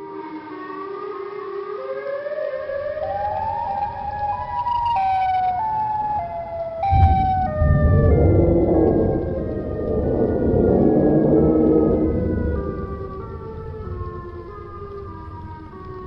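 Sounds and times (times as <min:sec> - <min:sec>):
wailing siren: 0:00.0 - 0:16.0
low rumble: 0:05.8 - 0:16.0.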